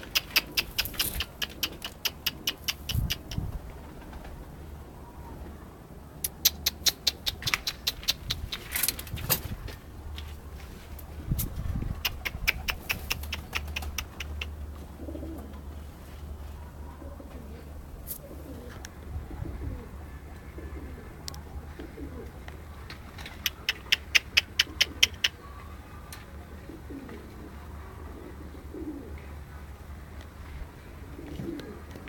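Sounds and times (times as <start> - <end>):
sharp clicks: 0.0 - 3.5, 6.2 - 9.4, 12.0 - 14.5
pigeons cooing: 0.0 - 5.6, 6.3 - 9.5, 11.0 - 25.8, 26.4 - 29.5, 31.0 - 32.0.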